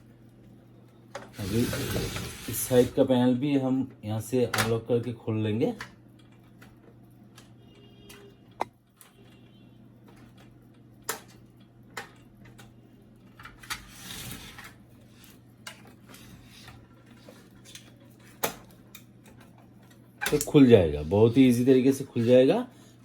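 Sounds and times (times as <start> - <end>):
plastic scraping: 1.4 - 3.0.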